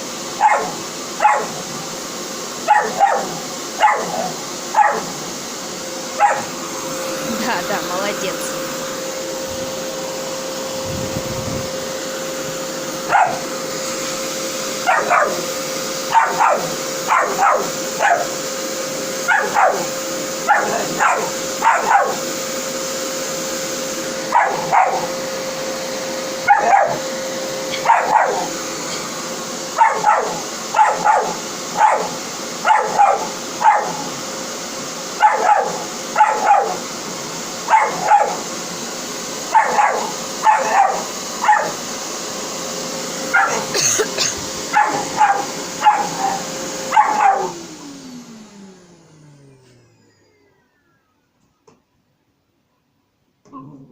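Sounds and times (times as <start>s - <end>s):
vacuum cleaner hum: 0.0s - 51.8s
dog barking and yelping: 0.4s - 1.7s, 2.6s - 5.2s, 6.1s - 6.6s, 13.0s - 13.6s, 14.8s - 18.4s, 19.2s - 22.3s, 24.2s - 25.2s, 26.4s - 27.1s, 27.7s - 28.6s, 29.8s - 34.2s, 35.2s - 36.8s, 37.6s - 38.5s, 39.4s - 41.8s, 43.2s - 47.6s.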